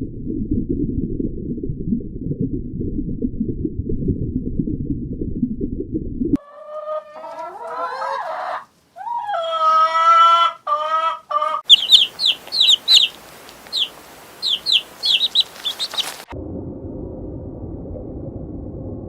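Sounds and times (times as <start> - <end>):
drawn-out farm animal calls: 6.4 - 16.3
chicks peeping: 6.9 - 16.3
steady hiss: 11.8 - 16.3.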